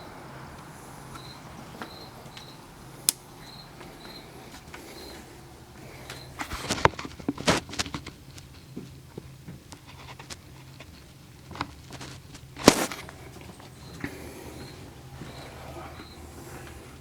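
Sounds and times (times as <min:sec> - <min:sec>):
footsteps: 0:00.5 - 0:17.0.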